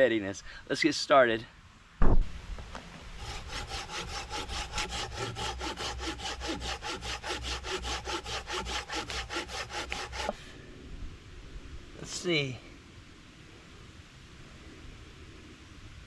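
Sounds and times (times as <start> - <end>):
handsaw cutting wood: 3.2 - 10.4.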